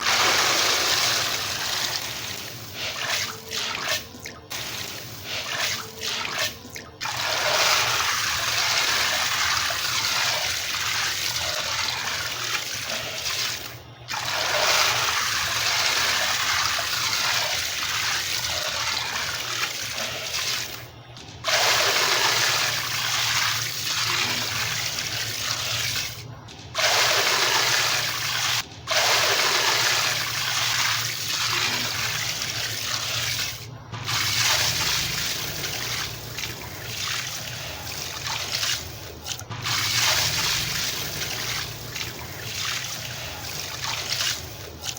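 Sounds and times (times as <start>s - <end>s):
concrete splashing into water: 33.2s - 42.3s.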